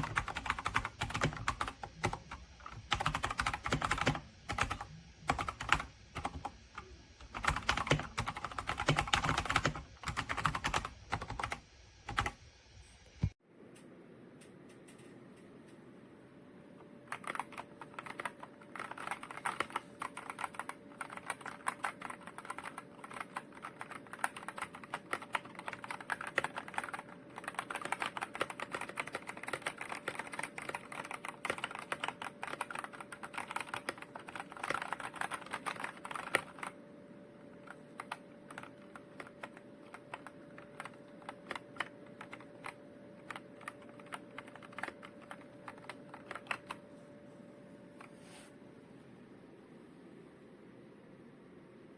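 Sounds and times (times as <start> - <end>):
mechanical keyboard typing: 0.0 - 12.4, 17.1 - 36.8, 37.6 - 46.8.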